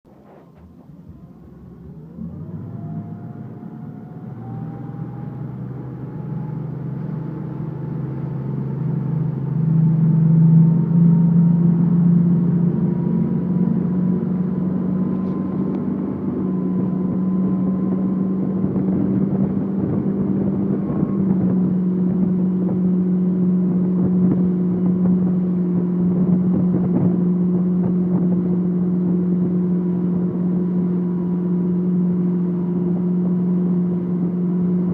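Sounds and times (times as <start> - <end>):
motorboat engine speeding up: 0.1 - 34.9.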